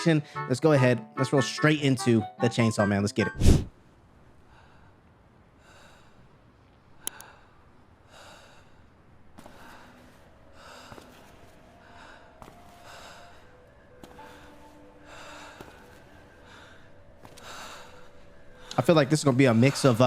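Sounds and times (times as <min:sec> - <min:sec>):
person breathing heavily: 0:03.4 - 0:03.7, 0:07.1 - 0:18.8.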